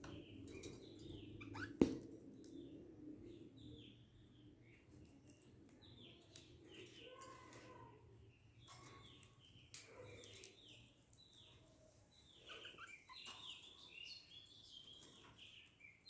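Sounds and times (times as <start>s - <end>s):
budgerigars chirping: 12.3s - 13.8s.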